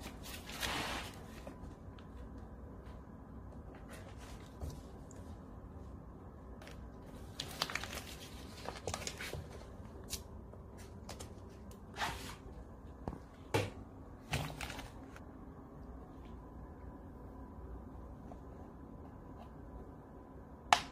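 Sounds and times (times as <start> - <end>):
low steady hum: 0.0 - 20.9
brushing scrapes: 0.3 - 1.4.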